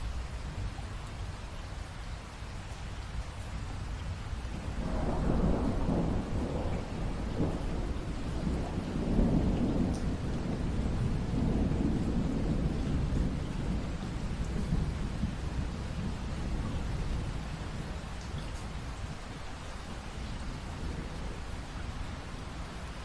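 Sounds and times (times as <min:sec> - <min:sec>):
steady rain: 0:00.0 - 0:23.0
low rolling thunder: 0:04.6 - 0:19.3, 0:19.9 - 0:23.0.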